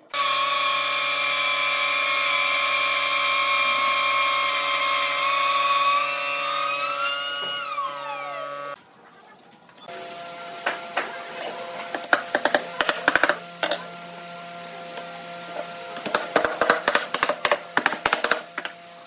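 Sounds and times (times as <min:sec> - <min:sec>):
tools tapping on wood: 0:11.9 - 0:13.8, 0:16.0 - 0:18.8.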